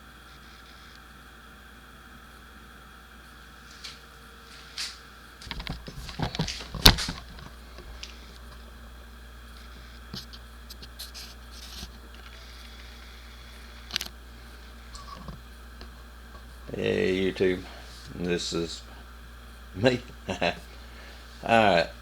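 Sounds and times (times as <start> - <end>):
handling knocks clicks and scrapes: 4.8 - 8.6.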